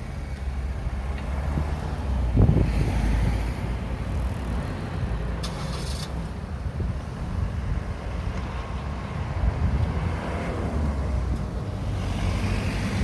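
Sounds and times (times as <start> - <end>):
rumble of vehicles: 0.0 - 13.0
vehicle passing: 8.6 - 13.0.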